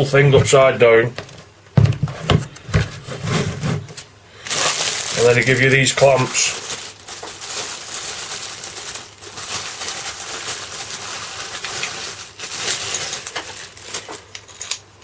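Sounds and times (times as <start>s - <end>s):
clamps rustling and clinking: 11.6s - 14.9s.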